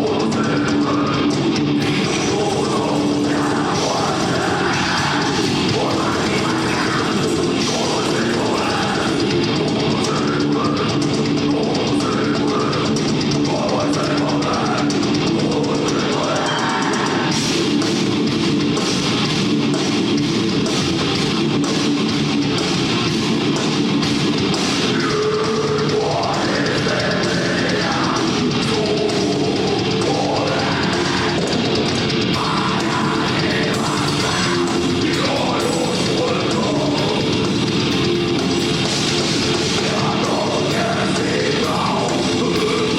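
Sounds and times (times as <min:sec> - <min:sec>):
distorted electric guitars: 0:00.0 - 0:42.9
drum kit: 0:00.0 - 0:42.9.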